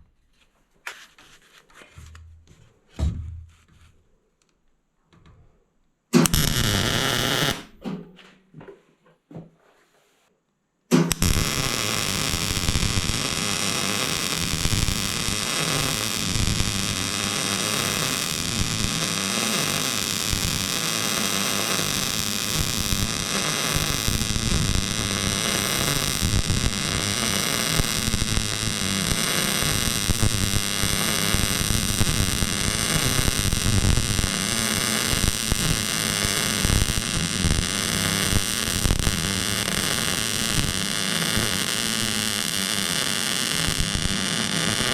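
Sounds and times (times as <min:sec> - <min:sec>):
welder humming: 0:06.2 - 0:07.7, 0:10.9 - 0:44.9
welding arc crackling sizzle: 0:06.2 - 0:07.7, 0:10.9 - 0:44.9.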